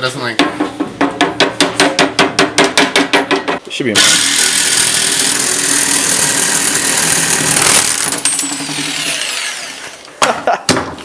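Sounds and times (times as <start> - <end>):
power tool on sheet metal: 4.0 - 10.0.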